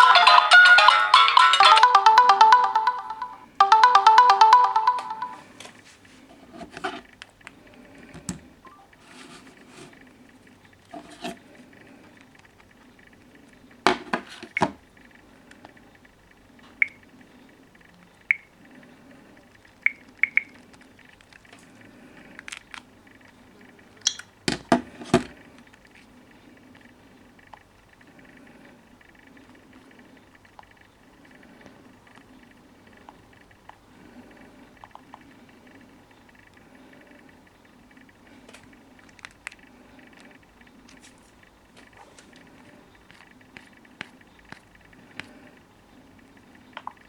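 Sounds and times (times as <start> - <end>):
marimba-style phone ringtone: 0.0 - 5.4.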